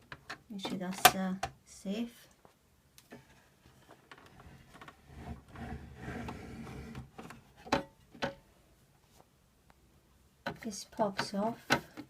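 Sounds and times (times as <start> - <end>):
plastic sliding scrape: 3.2 - 7.6.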